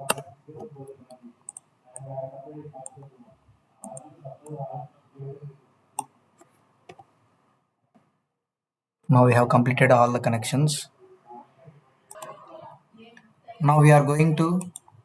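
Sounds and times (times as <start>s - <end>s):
computer mouse clicking: 0.0s - 2.1s, 3.8s - 4.6s, 6.0s - 7.1s, 14.6s - 15.0s.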